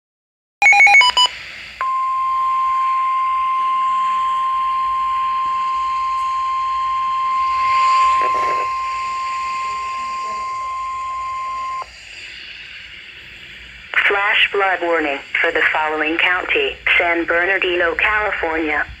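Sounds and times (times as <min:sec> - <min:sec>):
digital data tones: 0:00.6 - 0:11.9
steady high-pitched alarm tone: 0:00.7 - 0:11.9
faint radio static: 0:03.4 - 0:13.3, 0:13.9 - 0:19.0.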